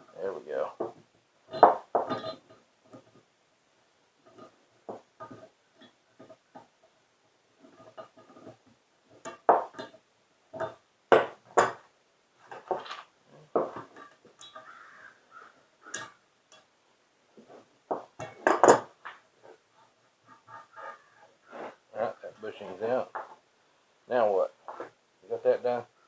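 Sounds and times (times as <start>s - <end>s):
metal knocks and clinks: 0.8s - 3.2s, 10.6s - 11.9s, 12.5s - 14.7s, 17.9s - 19.2s.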